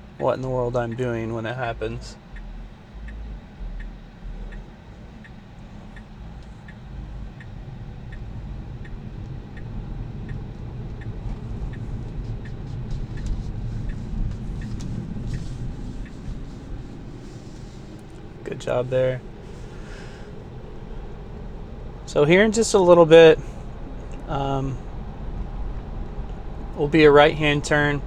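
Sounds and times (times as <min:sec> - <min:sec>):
turn signal ticking: 0:00.0 - 0:28.0
tyre and road rumble: 0:00.0 - 0:28.0.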